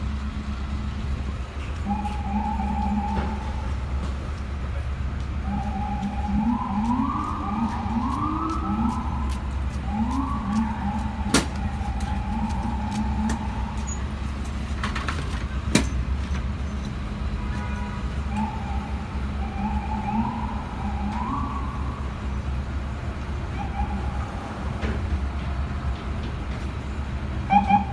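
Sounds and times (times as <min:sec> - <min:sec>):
city traffic rumble: 0:00.0 - 0:27.9.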